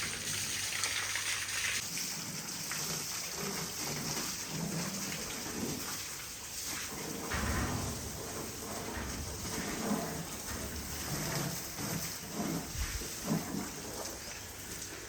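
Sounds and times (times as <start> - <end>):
water splashing: 0.0 - 15.0
low rumbling knocks: 7.0 - 13.9.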